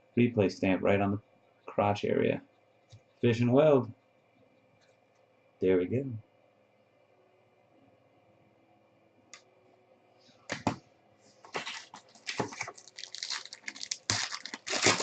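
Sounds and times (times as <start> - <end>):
cards shuffling: 11.4 - 15.0
wrapper crinkling: 11.5 - 15.0
wrapper tearing: 11.5 - 15.0.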